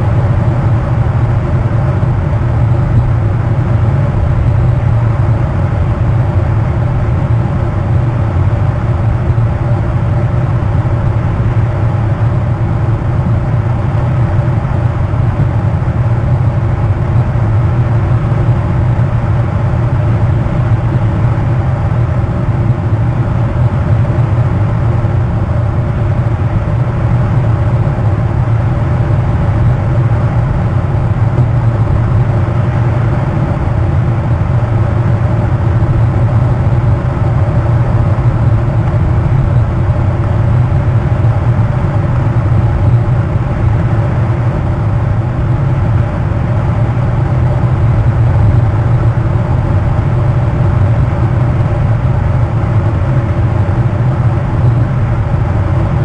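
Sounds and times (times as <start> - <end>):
faint hum tones: 0.0 - 56.0
loud low drone: 0.0 - 56.0.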